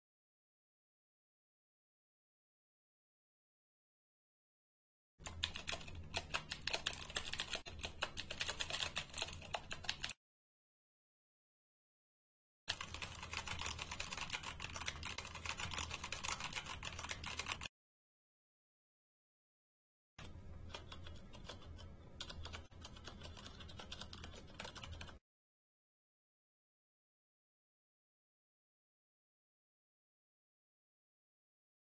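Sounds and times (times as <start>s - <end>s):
fast typing on mechanical keyboard: 5.2s - 10.2s, 12.7s - 17.7s, 20.7s - 25.2s.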